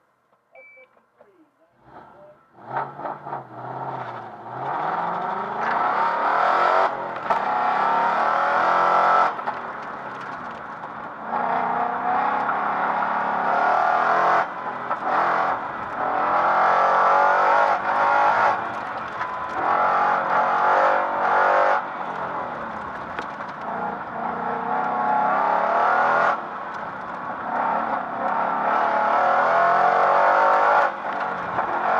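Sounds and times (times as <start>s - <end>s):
car engine at hard throttle: 1.8s - 31.9s.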